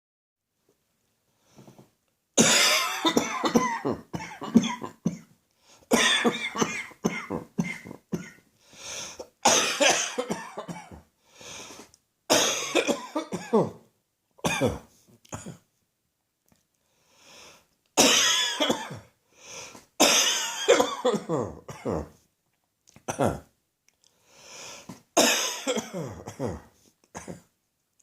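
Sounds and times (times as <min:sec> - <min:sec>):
person coughing: 0:02.4 - 0:05.3, 0:05.9 - 0:08.4, 0:09.4 - 0:11.1, 0:12.3 - 0:13.8, 0:14.4 - 0:15.7, 0:18.0 - 0:19.1, 0:20.0 - 0:22.2, 0:23.1 - 0:23.5, 0:25.2 - 0:27.5
short in-breaths: 0:08.6 - 0:09.3, 0:11.2 - 0:11.9, 0:16.8 - 0:17.7, 0:19.3 - 0:19.9, 0:24.1 - 0:25.0.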